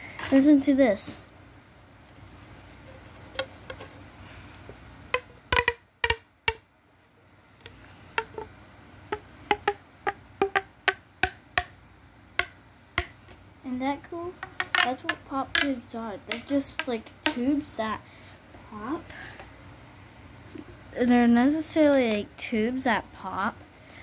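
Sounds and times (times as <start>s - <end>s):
pop tube toys popping: 5.1s - 6.7s, 7.6s - 8.5s, 9.1s - 11.8s, 12.4s - 13.2s.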